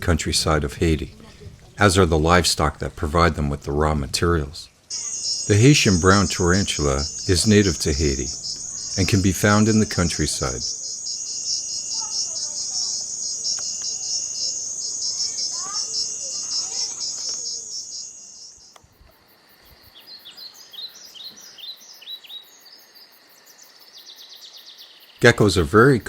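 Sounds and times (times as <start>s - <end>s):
insects trilling: 0.0s - 26.0s
faint bird chirps: 4.6s - 26.0s
bird singing high downward notes: 4.9s - 18.8s.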